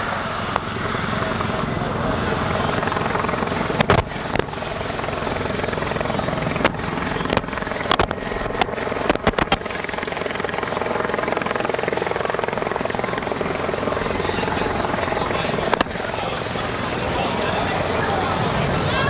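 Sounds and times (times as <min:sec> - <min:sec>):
helicopter rotor and engine: 0:00.0 - 0:19.0
sharp clicks: 0:03.7 - 0:04.5, 0:06.5 - 0:09.7, 0:15.5 - 0:16.0.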